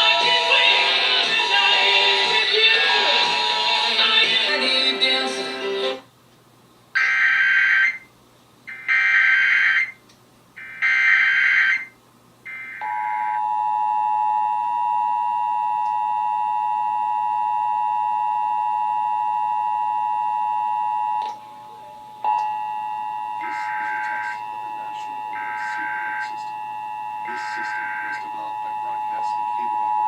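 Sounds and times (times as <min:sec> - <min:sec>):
two-tone attention signal: 0:22.2 - 0:30.0
data tone bursts: 0:22.3 - 0:30.0.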